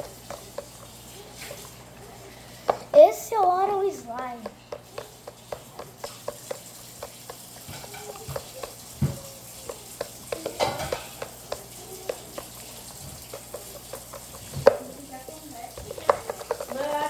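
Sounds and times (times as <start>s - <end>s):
knocks on basin: 4.4s - 15.0s.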